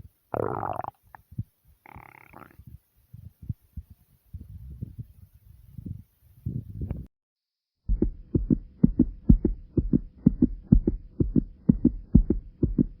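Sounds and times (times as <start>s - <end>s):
heartbeat thumps: 5.8s - 7.1s, 7.8s - 13.0s
faint steady hum: 7.9s - 13.0s.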